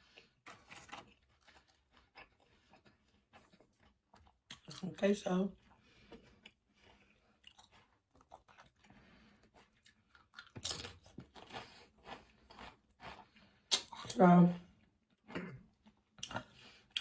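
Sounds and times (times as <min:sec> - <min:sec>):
person chewing crunchy food: 0:00.0 - 0:17.0.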